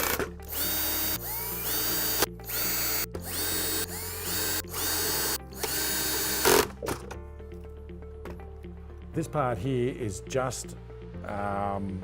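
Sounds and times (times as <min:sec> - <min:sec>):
power drill driving screws: 0:00.0 - 0:06.8.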